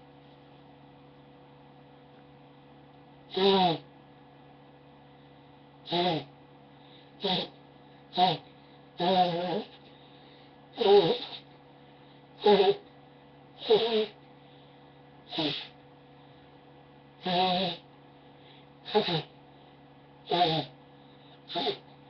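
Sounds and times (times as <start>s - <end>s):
person blowing nose: 3.3s - 3.8s, 5.9s - 6.3s, 7.2s - 7.5s, 10.8s - 11.4s, 15.3s - 15.7s, 18.9s - 19.3s, 20.3s - 20.7s, 21.5s - 21.8s.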